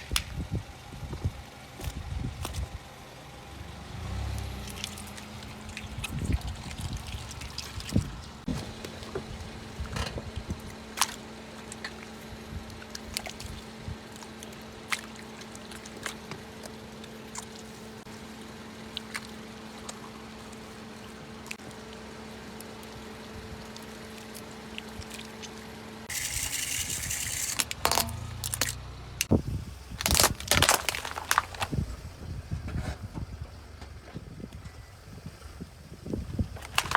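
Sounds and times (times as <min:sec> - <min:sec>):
wet crackling and popping: 0:04.3 - 0:25.7, 0:27.6 - 0:29.3, 0:30.0 - 0:32.0, 0:36.6 - 0:36.9
drips: 0:04.3 - 0:29.3.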